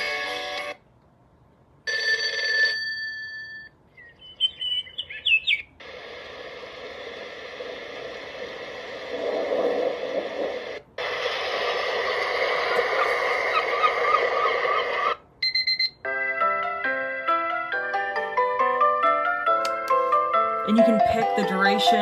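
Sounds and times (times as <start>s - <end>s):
ringing bell tone: 1.9s - 3.8s
bird chirps: 3.9s - 5.8s.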